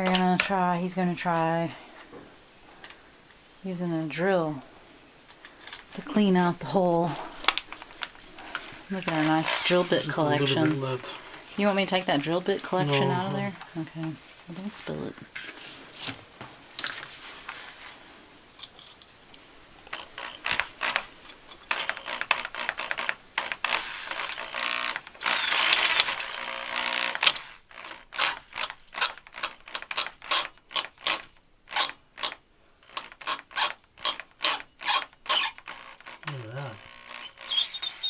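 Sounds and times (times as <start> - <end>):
electric drill grinding into bolt: 21.7 - 31.2.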